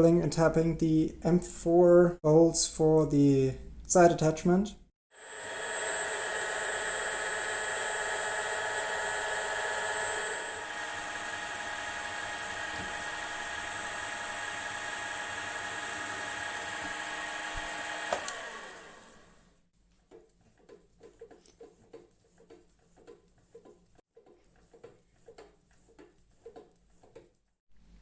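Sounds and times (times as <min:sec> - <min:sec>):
milling machine spindle whine: 0:05.2 - 0:19.2.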